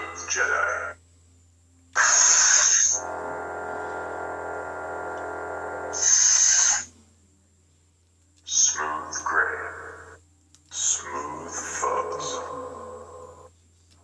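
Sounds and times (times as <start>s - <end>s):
lightsaber electric hum: 0.0s - 1.0s, 1.9s - 7.3s, 8.4s - 13.7s
lightsaber ignition burst: 2.0s - 6.9s
lightsaber retraction burst: 2.0s - 6.9s.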